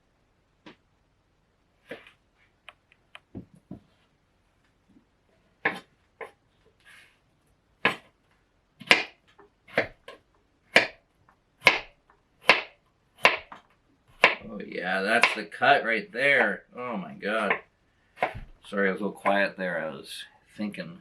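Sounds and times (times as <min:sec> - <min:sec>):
knife cutting cucumber on board: 0:05.6 - 0:06.4, 0:07.8 - 0:08.1, 0:08.8 - 0:11.0, 0:11.6 - 0:14.5.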